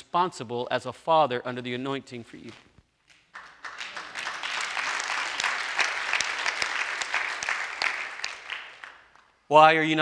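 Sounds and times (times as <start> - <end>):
congregation applauding: 3.1 - 9.4.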